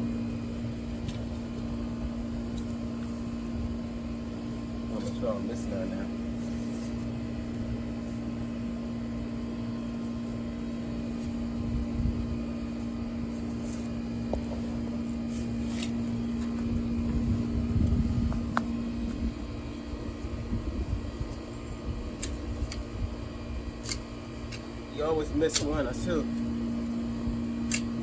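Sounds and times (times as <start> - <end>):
machine motor humming: 0.0 - 28.0
digging in soft soil: 4.8 - 8.9, 9.8 - 28.0
low rumbles: 16.0 - 25.0.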